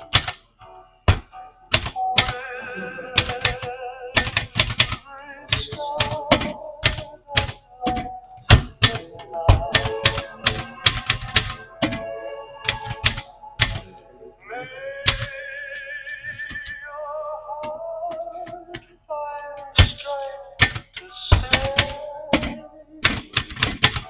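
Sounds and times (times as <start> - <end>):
typewriter key clacks: 0.0 - 0.4, 1.1 - 2.4, 3.2 - 12.0, 12.6 - 13.8, 15.0 - 15.3, 20.6 - 24.0.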